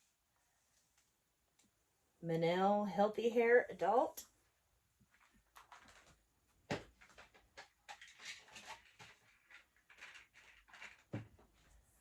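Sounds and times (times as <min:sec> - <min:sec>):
plastic packaging rustling: 0:05.1 - 0:11.8.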